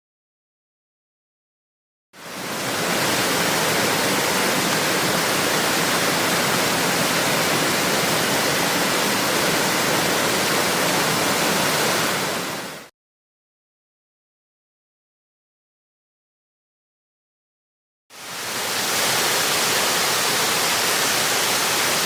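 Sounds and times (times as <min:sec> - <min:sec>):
waterfall rushing: 0:02.2 - 0:12.9, 0:18.1 - 0:22.0.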